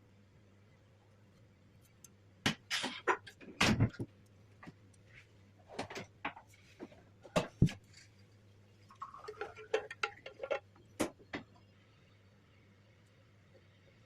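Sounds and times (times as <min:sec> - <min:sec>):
kitchen utensils clicking and knocking: 0:09.2 - 0:11.1.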